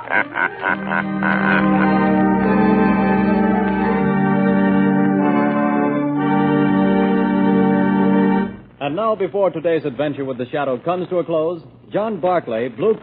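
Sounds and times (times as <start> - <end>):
organ playing held chords: 0.0 - 8.8.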